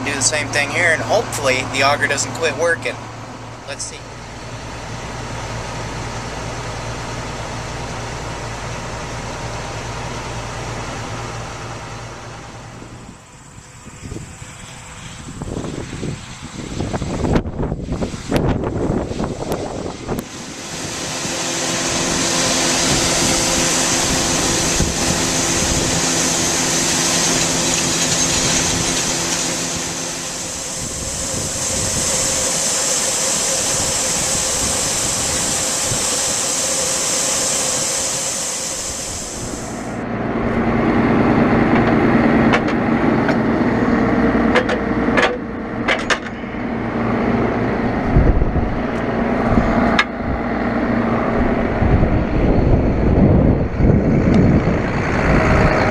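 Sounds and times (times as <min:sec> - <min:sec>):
tractor diesel engine running: 0:00.0 - 0:55.9
wind hiss: 0:10.8 - 0:40.0.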